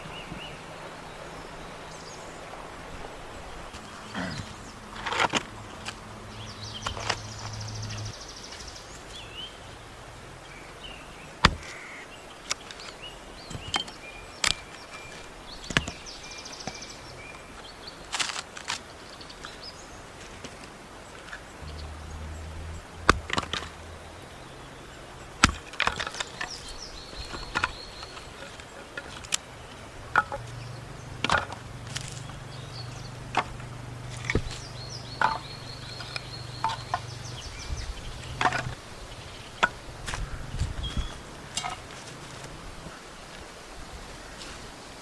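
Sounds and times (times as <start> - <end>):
wood chopping strikes: 11.4 - 11.8, 25.4 - 26.6, 31.2 - 32.2, 33.4 - 37.1.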